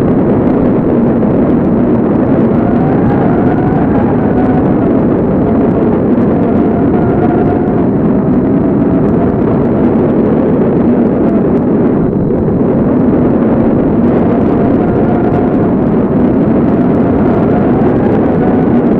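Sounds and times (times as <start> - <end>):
rushing roar of wind: 0.0 - 18.9
faint wavering whistle: 2.2 - 9.4, 14.2 - 18.9.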